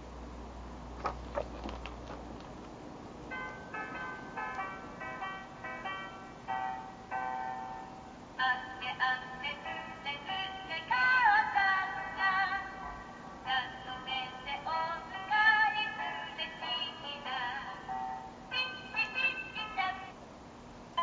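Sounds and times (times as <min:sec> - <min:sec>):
tinny singing from toy speaker: 0:18.5 - 0:20.1.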